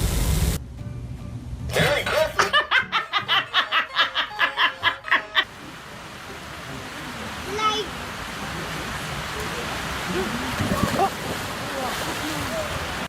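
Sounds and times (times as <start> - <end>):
rhythmic laughter: 1.7 - 5.5.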